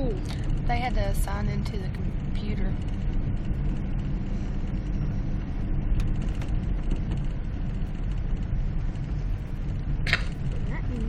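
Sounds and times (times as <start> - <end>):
engine and tyres rumbling: 0.0 - 11.0.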